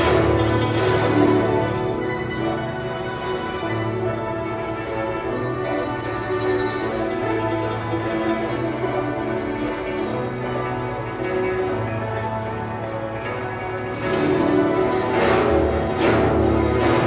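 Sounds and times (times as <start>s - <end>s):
plucked zither ensemble: 0.0s - 17.0s.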